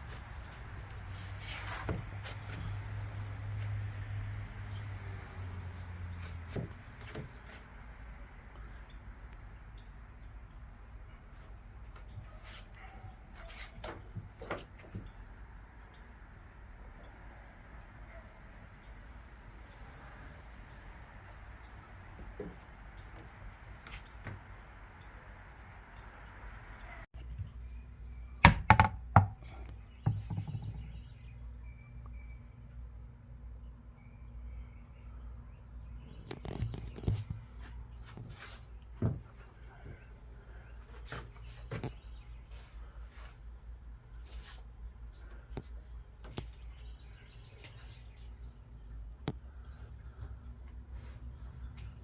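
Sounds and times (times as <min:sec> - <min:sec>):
bird chirps: 0:08.7 - 0:10.8, 0:17.0 - 0:17.3, 0:18.8 - 0:19.1, 0:29.5 - 0:38.1
knocks and thuds: 0:28.4 - 0:31.0.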